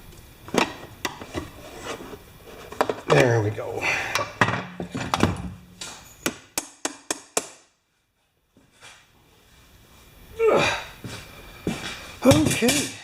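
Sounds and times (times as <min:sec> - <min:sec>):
tools knocking on metal: 0:12.3 - 0:13.0.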